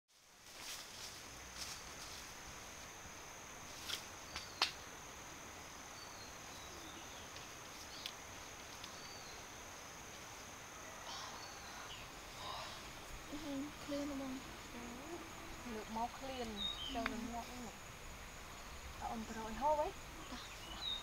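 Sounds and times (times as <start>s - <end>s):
insect drone: 0.1s - 21.0s
bird chirps: 16.3s - 17.2s, 20.2s - 21.0s.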